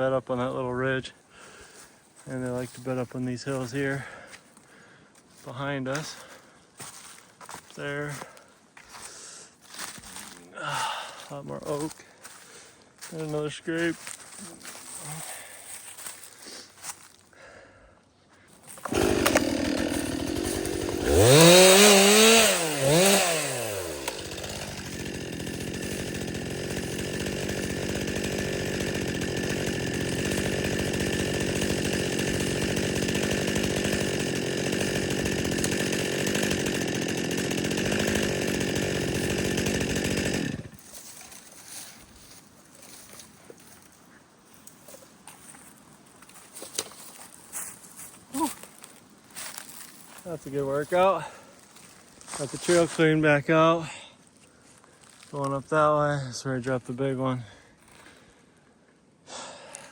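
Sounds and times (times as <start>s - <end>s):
chainsaw starting and revving: 18.7s - 43.8s, 48.4s - 54.0s, 57.5s - 58.3s.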